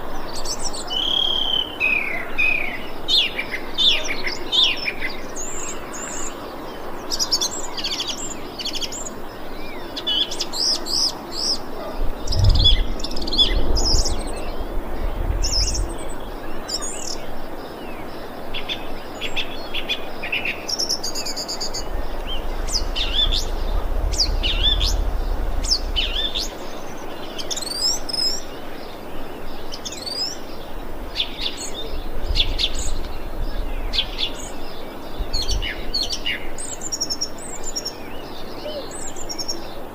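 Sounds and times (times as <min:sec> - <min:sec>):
low rumble: 0:12.1 - 0:16.4, 0:21.5 - 0:27.1, 0:30.6 - 0:36.1.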